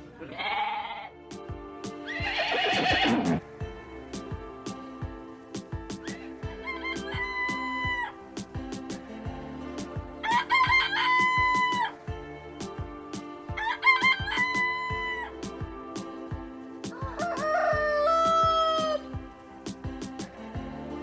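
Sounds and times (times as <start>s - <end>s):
rooster crowing: 16.9s - 19.0s.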